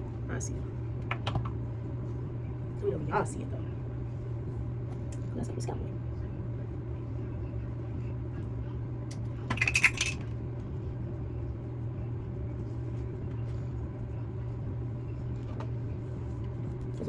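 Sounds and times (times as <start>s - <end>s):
steady low hum: 0.0s - 17.0s
small metal objects clattering: 9.6s - 10.2s.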